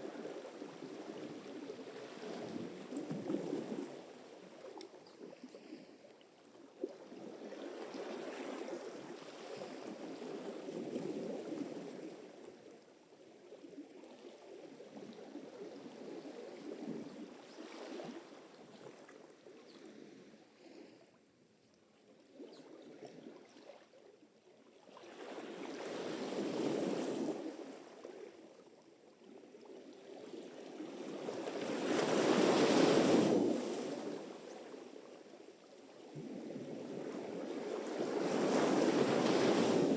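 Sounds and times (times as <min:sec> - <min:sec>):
waves washing up shore: 0:31.4 - 0:34.4, 0:36.8 - 0:39.9.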